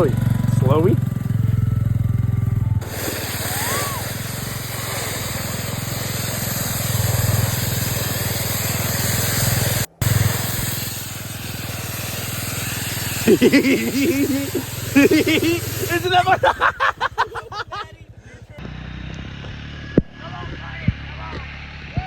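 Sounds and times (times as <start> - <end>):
four-wheeler engine running: 0.0 - 22.0
plastic sliding over snow: 2.8 - 17.4.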